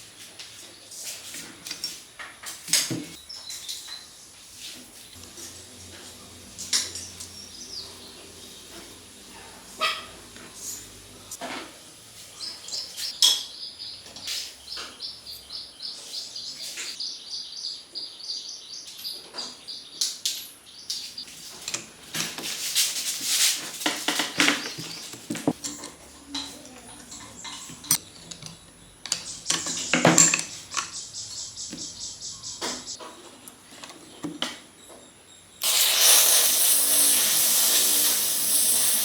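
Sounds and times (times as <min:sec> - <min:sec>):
hissing: 0:35.6 - 0:39.0.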